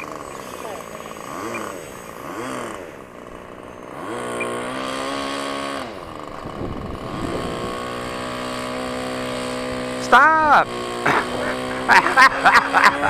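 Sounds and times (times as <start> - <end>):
model plane electric motor whine: 0.0 - 13.0.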